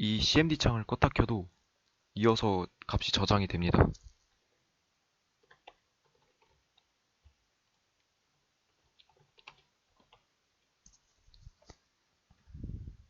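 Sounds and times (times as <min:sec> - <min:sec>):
keyboard and mouse clicks: 0:05.4 - 0:06.9, 0:08.9 - 0:11.0.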